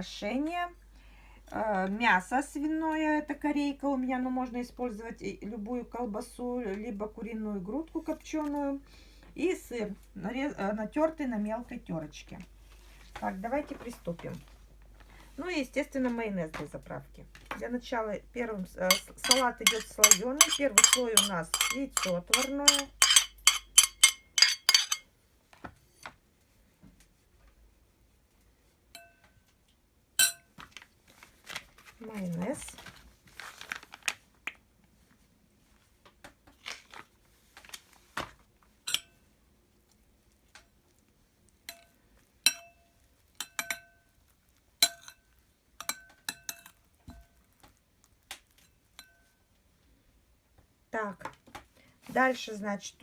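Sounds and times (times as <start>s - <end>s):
spoon clinking against dish: 18.9s - 25.0s, 30.2s - 30.4s, 38.9s - 39.2s, 42.5s - 42.8s, 43.4s - 43.9s, 45.8s - 46.8s.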